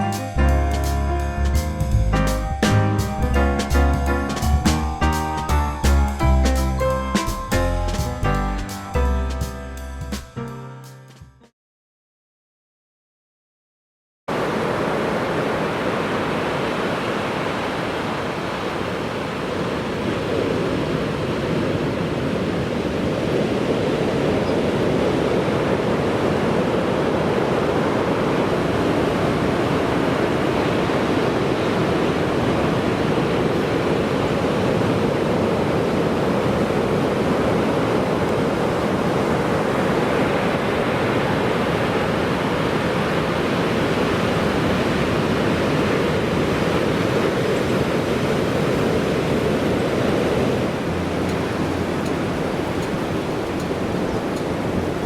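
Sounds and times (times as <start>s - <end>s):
heavy surf breaking on beach: 14.3s - 55.0s.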